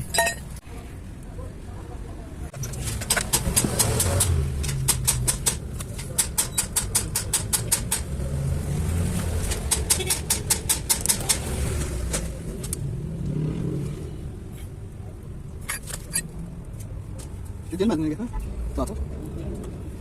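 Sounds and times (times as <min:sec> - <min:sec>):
hand tool metallic clicks: 0:03.0 - 0:08.2, 0:09.5 - 0:11.5.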